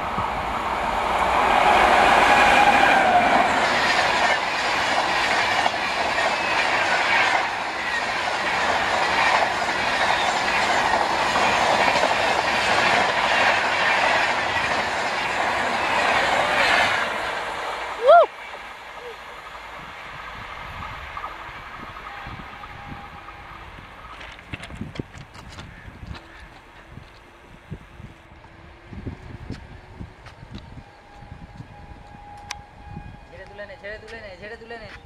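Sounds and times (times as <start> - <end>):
locomotive horn: 1.6 - 3.6, 21.4 - 24.0, 30.6 - 34.3
wheels clacking over rail joints: 2.1 - 17.7.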